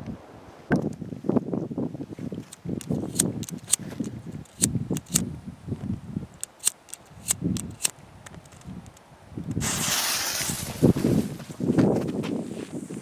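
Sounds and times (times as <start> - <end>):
wind buffeting microphone: 0.0 - 13.0
sharp clicks and snaps: 2.5 - 5.2, 6.4 - 9.6.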